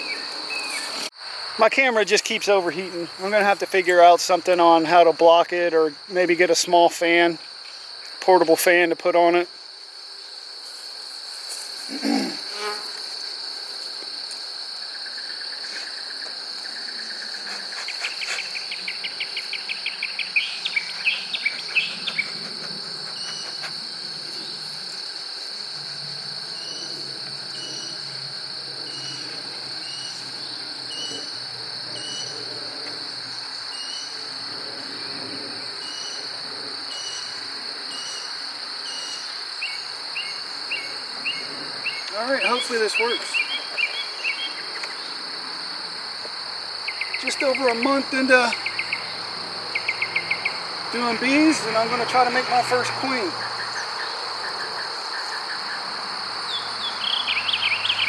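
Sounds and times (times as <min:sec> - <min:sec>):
insect chorus trilling: 0:00.0 - 0:58.0
bird chirping: 0:16.6 - 0:22.4, 0:39.0 - 0:44.8, 0:46.9 - 0:47.8, 0:48.5 - 0:51.9, 0:56.5 - 0:58.0.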